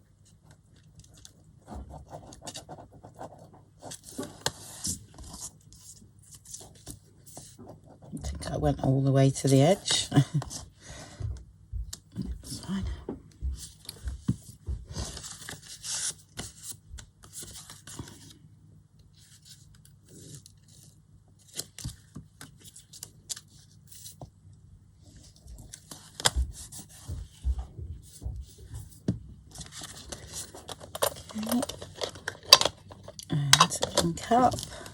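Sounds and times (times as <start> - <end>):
paper rustling and rubbing: 13.6 - 18.3, 25.1 - 33.1.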